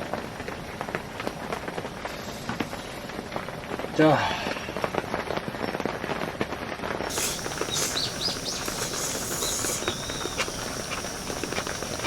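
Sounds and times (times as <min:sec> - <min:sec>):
rain pattering: 0:00.0 - 0:12.0
high bird-like chirps: 0:07.1 - 0:12.0.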